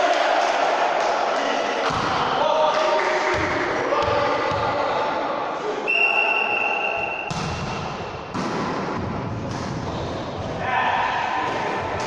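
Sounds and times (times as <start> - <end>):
players' voices: 0.0 - 12.0
referee's whistle: 5.9 - 7.3
ball thumping: 7.3 - 10.1.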